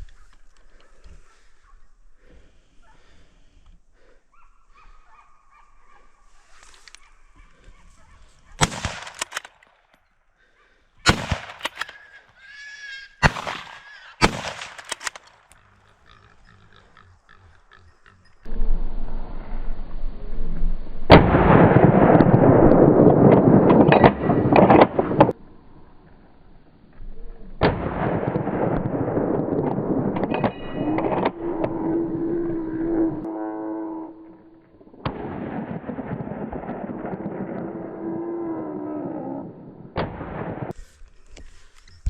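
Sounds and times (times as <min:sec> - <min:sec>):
gunshots: 0:08.6 - 0:09.8, 0:11.1 - 0:12.4, 0:13.2 - 0:15.6, 0:27.6 - 0:31.4, 0:35.0 - 0:38.3, 0:39.9 - 0:40.8.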